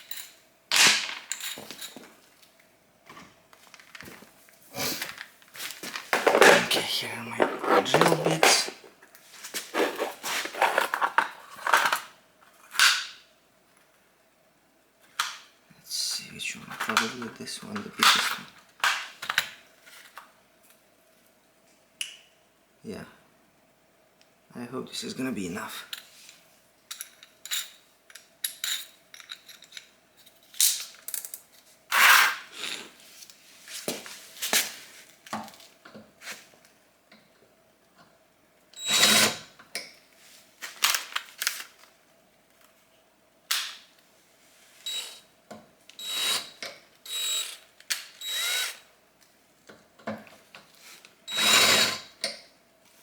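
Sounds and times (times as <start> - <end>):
electric drill drilling metal: 38.8 - 39.4, 46.0 - 47.6, 48.2 - 48.8, 51.3 - 52.0.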